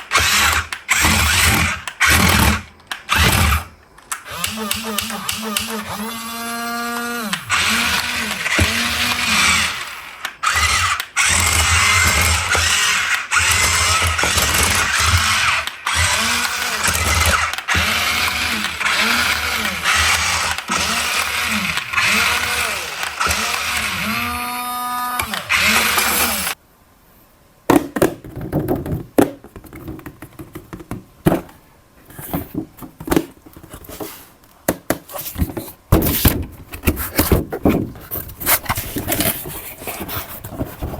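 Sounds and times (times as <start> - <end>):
toy electric motors whirring: 0.0 - 26.6
plastic toy clicks and knocks: 7.5 - 24.0.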